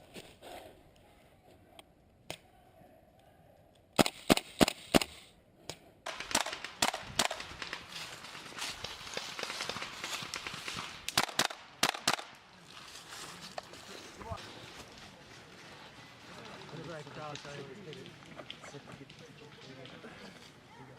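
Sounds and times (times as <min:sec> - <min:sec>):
airsoft gun shots: 0:04.0 - 0:05.2, 0:06.1 - 0:07.7, 0:11.1 - 0:12.3
small clicks and crackle: 0:06.1 - 0:13.8, 0:14.7 - 0:20.9.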